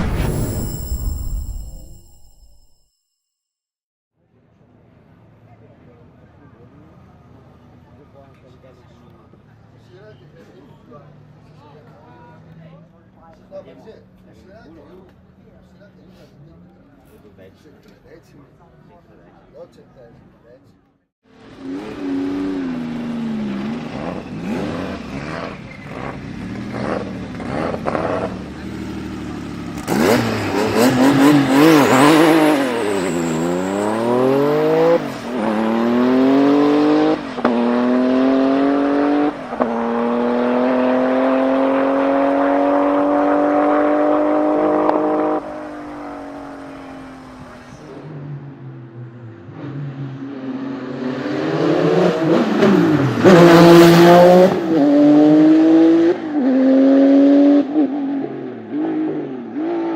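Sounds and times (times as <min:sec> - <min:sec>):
sports car engine revving and accelerating: 0:21.6 - 0:48.2, 0:48.8 - 0:59.9.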